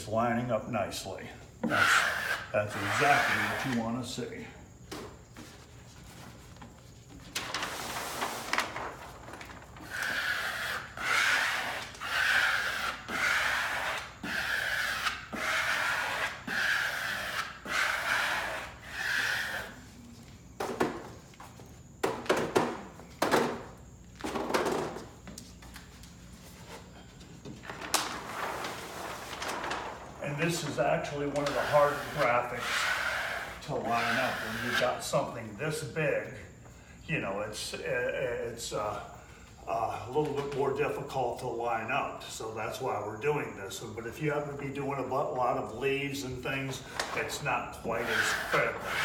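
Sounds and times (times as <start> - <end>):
wallpaper rubbing strokes: 5.4 - 20.2, 28.2 - 35.0, 47.9 - 49.0.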